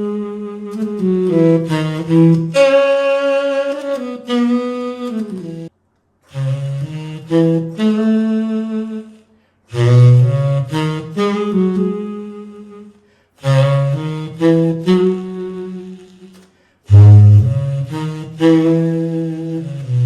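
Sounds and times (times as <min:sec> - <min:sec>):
low saxophone melody: 0:00.0 - 0:05.7, 0:06.3 - 0:20.0.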